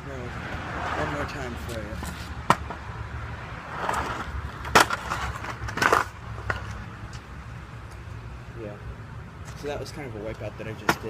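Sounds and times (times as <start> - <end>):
board smacking pavement: 3.8 - 6.7.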